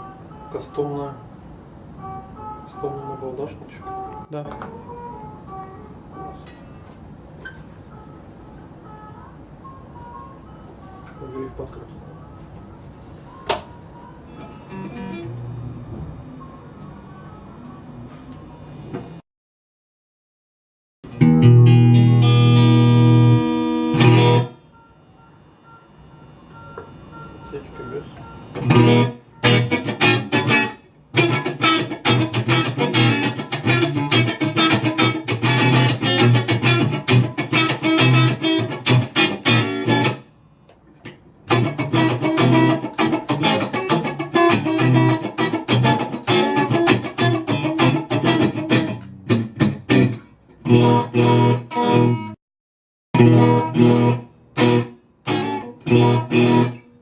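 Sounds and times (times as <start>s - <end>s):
electric guitar runs: 21.1s - 24.5s, 28.6s - 40.2s, 41.5s - 50.1s, 53.2s - 56.8s.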